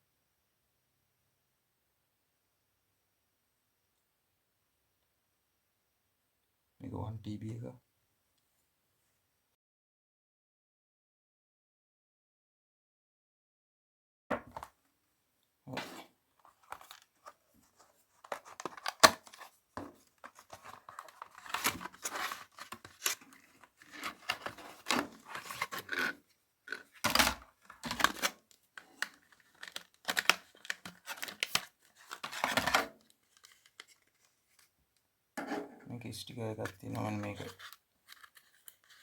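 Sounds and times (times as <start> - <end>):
packaging tearing and rustling: 16.5 - 17.4, 18.2 - 34.3, 37.4 - 39.0.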